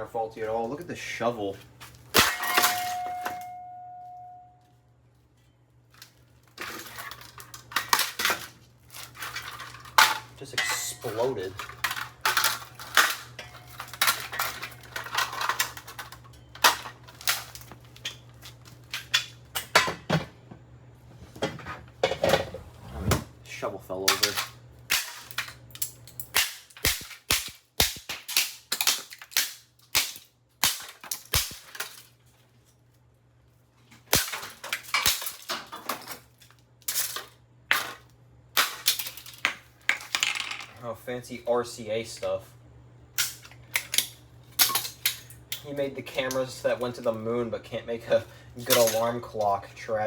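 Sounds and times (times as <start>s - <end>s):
broken plastic parts clattering: 1.8s - 3.6s, 5.9s - 20.3s, 28.0s - 32.8s, 33.8s - 40.8s, 48.6s - 49.6s
plastic parts clacking and knocking: 33.9s - 40.8s.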